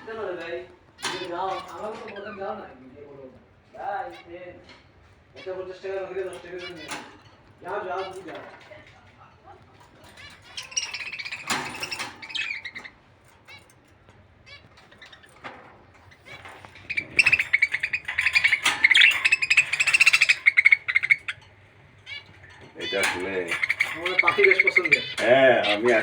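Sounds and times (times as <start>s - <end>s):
small birds chirping: 0.0s - 26.0s.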